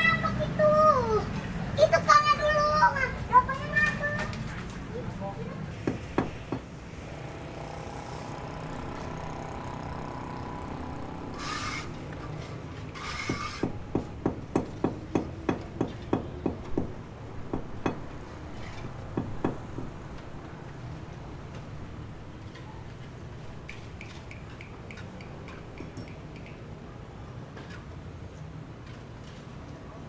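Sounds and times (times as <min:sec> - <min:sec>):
short scraping hisses: 0:11.4 - 0:13.7.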